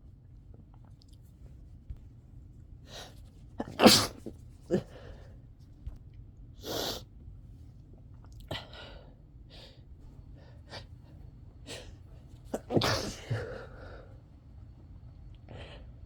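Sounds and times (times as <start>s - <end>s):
person sneezing: 3.6s - 5.1s, 12.6s - 13.8s.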